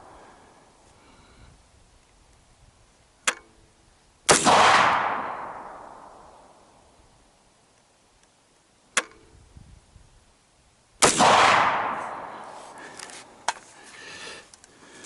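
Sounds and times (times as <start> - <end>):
rifle shots with echo: 4.3 - 6.7, 11.0 - 12.7.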